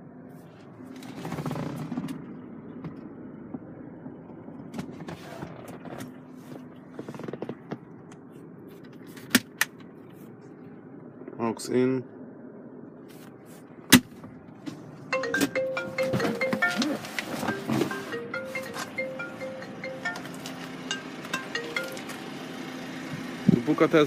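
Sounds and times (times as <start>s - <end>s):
car interior trim creaking: 0.9s - 3.0s, 4.6s - 9.8s, 16.0s - 19.0s.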